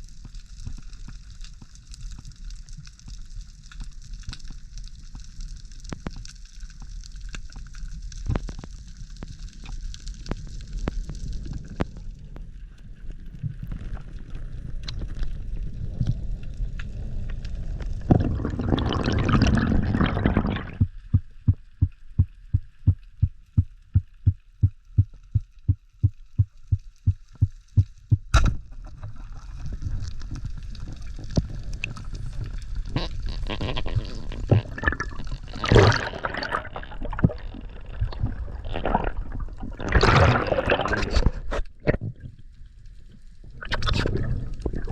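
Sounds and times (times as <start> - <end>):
low underwater noise: 0.0 - 44.9
rushing bubbles: 15.7 - 23.3, 29.1 - 42.4, 43.5 - 44.9.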